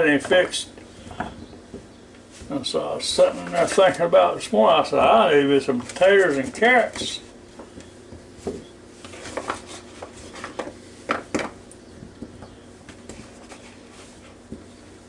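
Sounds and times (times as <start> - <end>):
paper towel rustling: 2.3 - 7.3, 13.0 - 14.5.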